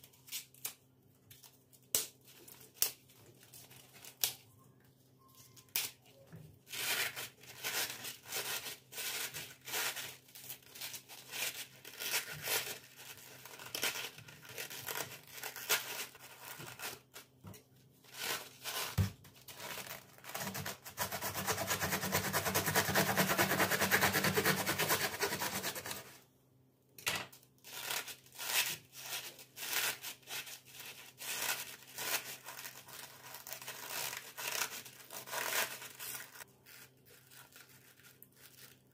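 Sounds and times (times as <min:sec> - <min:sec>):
hands tearing and scraping food: 0:27.6 - 0:38.9.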